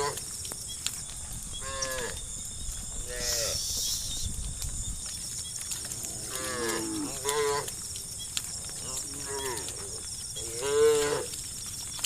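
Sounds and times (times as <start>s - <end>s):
cows mooing: 6.0s - 7.7s, 10.4s - 11.4s.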